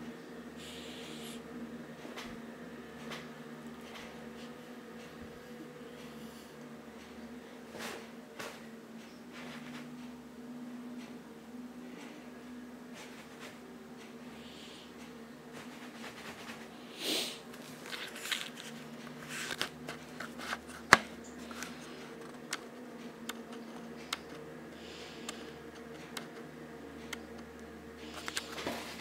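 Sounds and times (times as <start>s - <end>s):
low hum: 0.0s - 29.0s
person sniffling: 17.0s - 17.4s.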